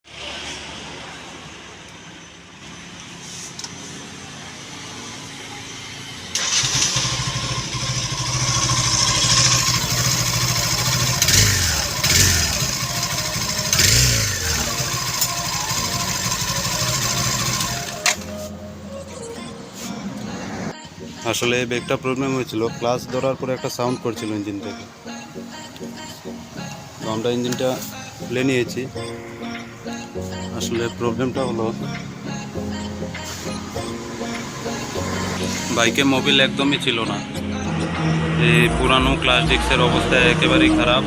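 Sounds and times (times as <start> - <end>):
motorcycle engine idling and revving: 0.1 - 18.3.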